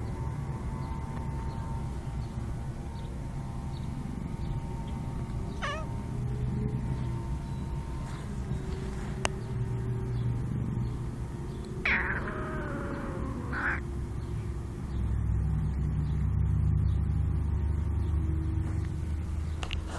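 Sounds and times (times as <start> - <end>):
cat yawning: 5.6 - 6.0, 11.8 - 13.9.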